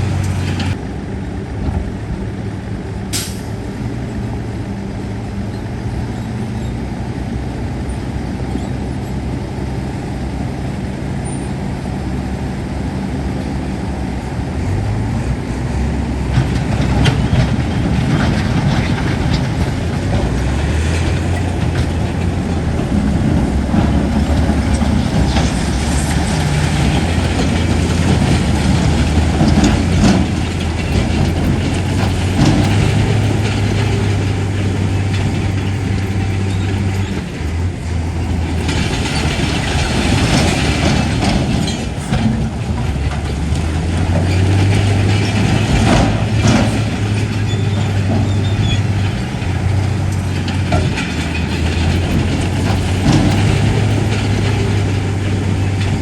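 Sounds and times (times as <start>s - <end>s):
steel tracks clanking: 0.0s - 0.8s, 3.1s - 3.8s, 15.4s - 56.0s
bulldozer diesel engine: 0.0s - 56.0s
metallic knocks: 16.4s - 56.0s.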